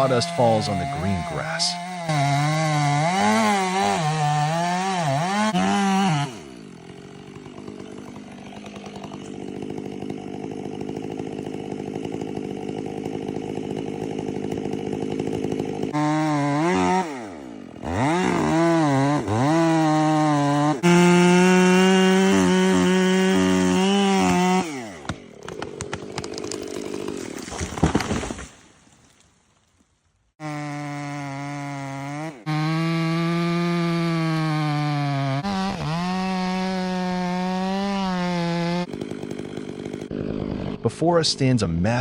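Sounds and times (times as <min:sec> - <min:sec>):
chainsaw revving: 0:00.0 - 0:28.3, 0:30.4 - 0:41.1.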